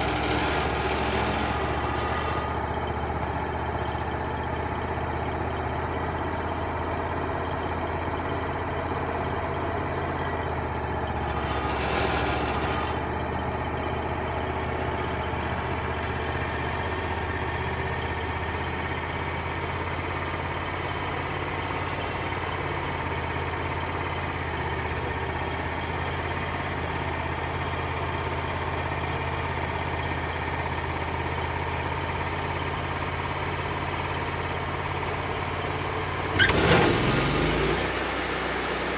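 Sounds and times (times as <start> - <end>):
sawmill engine running: 0.0 - 38.9
brief hissing rush: 36.4 - 38.9.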